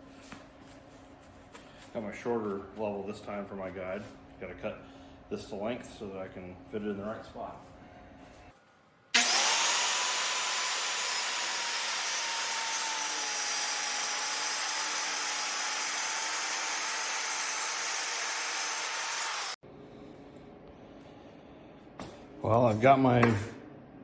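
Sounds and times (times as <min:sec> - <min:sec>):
circular saw cutting wood: 0:09.2 - 0:19.6.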